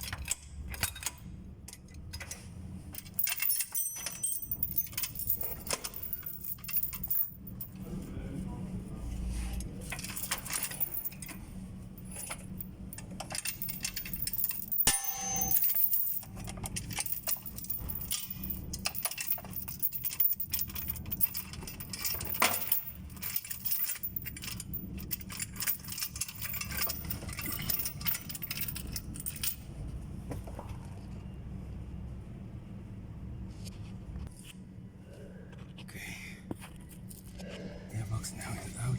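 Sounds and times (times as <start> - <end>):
metal tools clinking and clanging: 0.0 - 7.9, 9.5 - 29.7
low steady hum: 0.0 - 38.9
ringing metal clang: 14.8 - 16.2.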